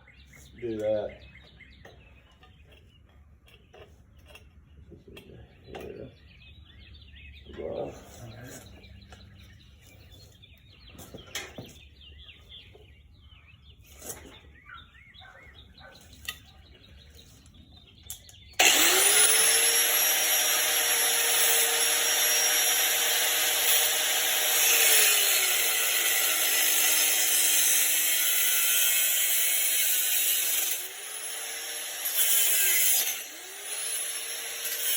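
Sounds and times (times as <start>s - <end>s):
faint birdsong: 0.0s - 34.9s
power tool whining: 18.6s - 34.9s.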